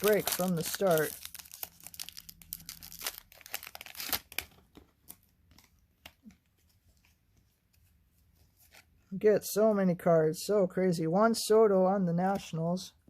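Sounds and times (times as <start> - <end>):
foil wrapper crinkling: 0.0 - 6.3
cards being handled: 0.0 - 9.1.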